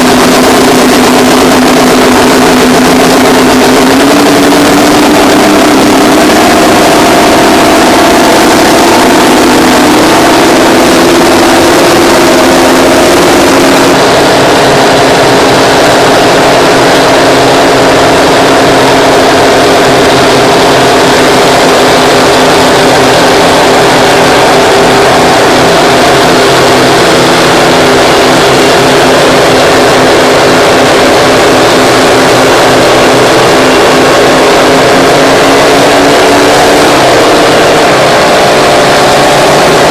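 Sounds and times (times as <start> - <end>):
bulldozer engines under load: 0.0 - 39.9.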